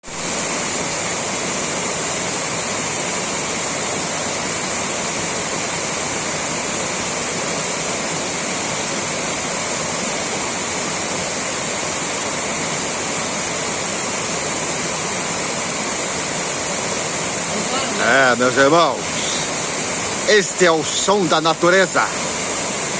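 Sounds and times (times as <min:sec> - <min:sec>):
rushing water: 0:00.0 - 0:22.9
high-pitched hiss: 0:13.8 - 0:22.7.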